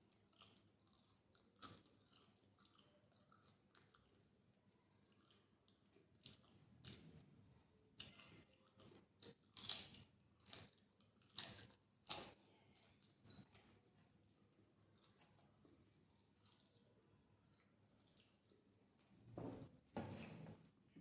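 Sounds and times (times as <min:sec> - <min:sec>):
person chewing sweets: 0:00.0 - 0:07.3, 0:07.9 - 0:19.2.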